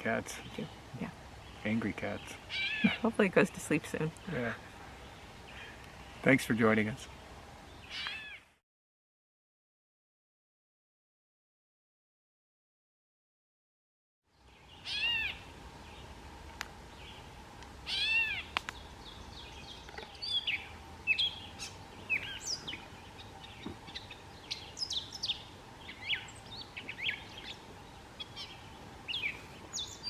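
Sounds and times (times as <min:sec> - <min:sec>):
jumbled bird song: 0:00.0 - 0:08.6, 0:14.3 - 0:30.0
bird mewing calls: 0:02.3 - 0:03.2, 0:14.8 - 0:15.5, 0:17.9 - 0:30.0.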